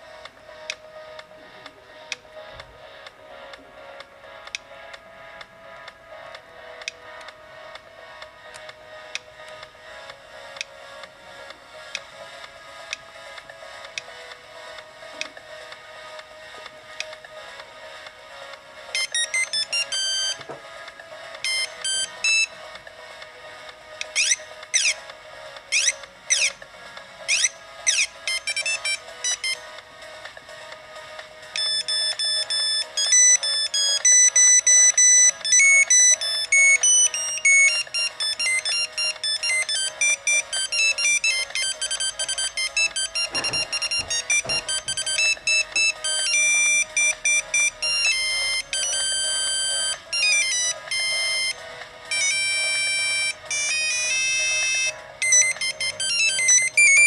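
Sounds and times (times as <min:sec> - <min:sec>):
monophonic phone ringtones: 0:19.0 - 0:22.9, 0:24.1 - 0:25.0, 0:25.7 - 0:26.6, 0:27.3 - 0:29.8, 0:31.6 - 0:57.0.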